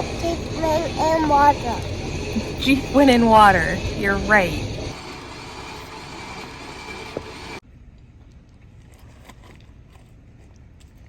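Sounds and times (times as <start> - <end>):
vehicle running noise: 0.0 - 7.6.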